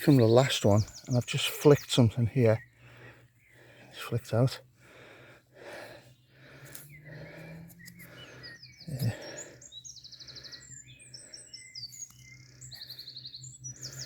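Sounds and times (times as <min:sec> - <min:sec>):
small birds singing and chirping: 0:00.0 - 0:14.0
bird trills: 0:06.2 - 0:14.0.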